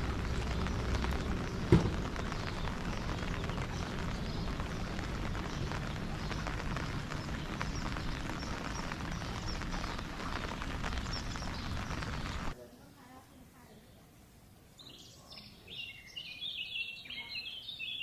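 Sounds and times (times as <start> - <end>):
rain falling: 0.0 - 12.6.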